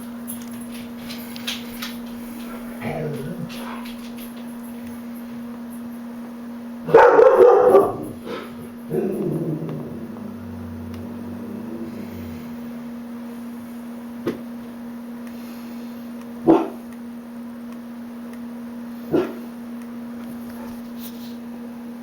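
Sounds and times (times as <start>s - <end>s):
steady low hum: 0.0s - 22.0s
dog barking: 6.9s - 9.4s, 16.4s - 16.8s, 19.1s - 19.5s.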